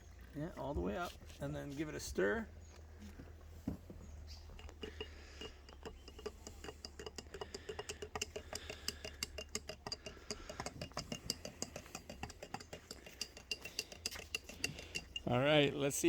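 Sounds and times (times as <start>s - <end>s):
spoon clinking against glass: 4.4s - 15.6s.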